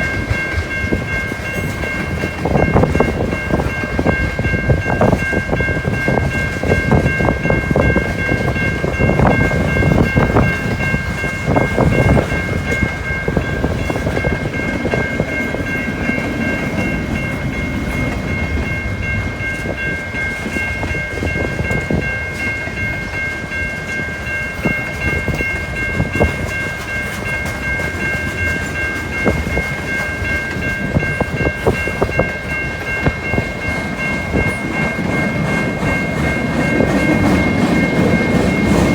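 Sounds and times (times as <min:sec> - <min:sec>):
train wheels clicking over rail joints: 0:00.0 - 0:38.9.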